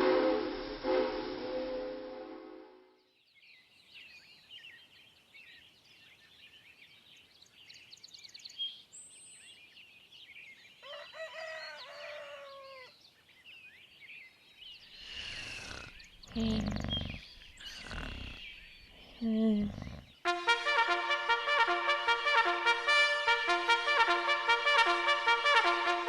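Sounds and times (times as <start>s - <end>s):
small birds chirping: 3.2s - 10.8s, 11.8s - 20.3s
rooster crowing: 10.8s - 13.0s.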